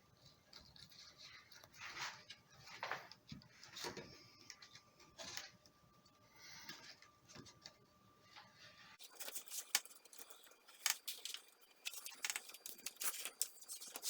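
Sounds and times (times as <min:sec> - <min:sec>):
hands scratching and clicking: 0:09.0 - 0:14.0.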